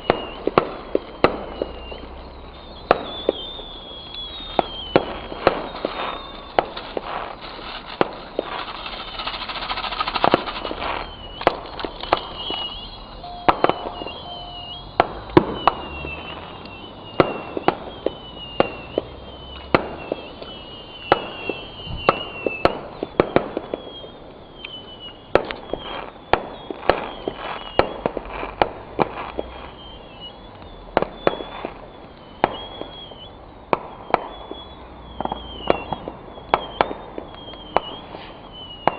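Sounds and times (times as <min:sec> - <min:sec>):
firework bangs and cracks: 0:00.0 - 0:38.9
high falling whistle: 0:00.0 - 0:38.9.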